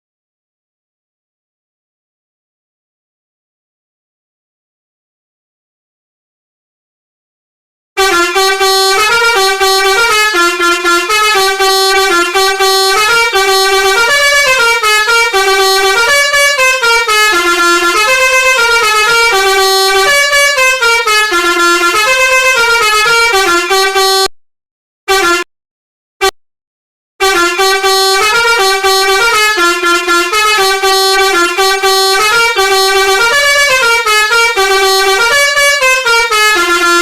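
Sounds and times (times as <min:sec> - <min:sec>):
bus horn blasts: 0:08.0 - 0:24.3, 0:25.1 - 0:25.5, 0:27.2 - 0:37.0
musical bus horn melody: 0:08.0 - 0:24.3, 0:25.1 - 0:25.5, 0:27.2 - 0:37.0.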